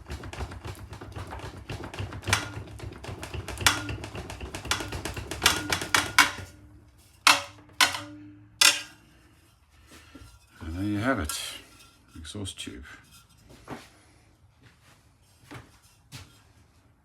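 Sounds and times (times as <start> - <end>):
metal rattling in a vise: 2.0 - 9.1
sharp ringing metal knocks: 3.6 - 6.6, 7.3 - 9.0.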